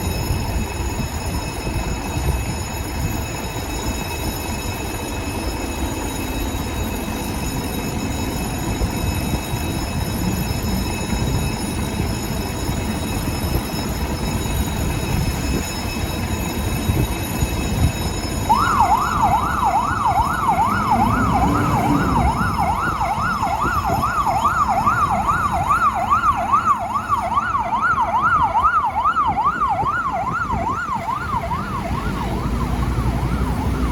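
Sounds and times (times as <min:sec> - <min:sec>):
truck engine rumbling: 0:00.3 - 0:33.9
siren yelp: 0:07.0 - 0:33.9.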